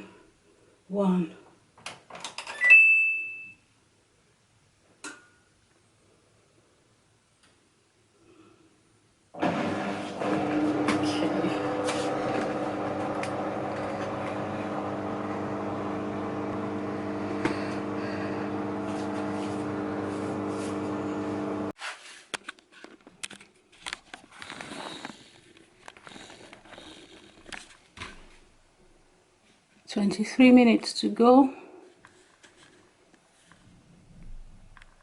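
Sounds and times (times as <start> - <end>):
washing machine humming: 9.4 - 21.8.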